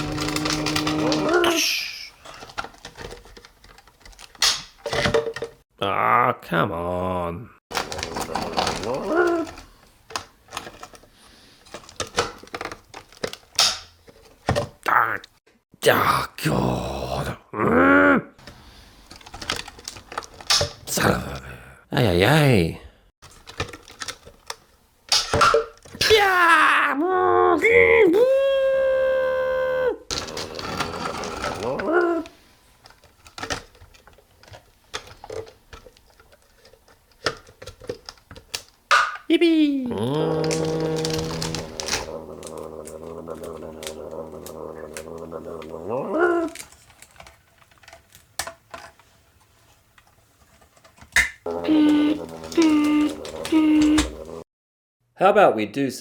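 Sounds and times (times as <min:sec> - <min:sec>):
plastic toy pieces clacking: 0:00.0 - 0:05.6, 0:07.7 - 0:14.6, 0:18.4 - 0:20.9, 0:23.2 - 0:26.0, 0:30.1 - 0:39.3, 0:40.1 - 0:49.0.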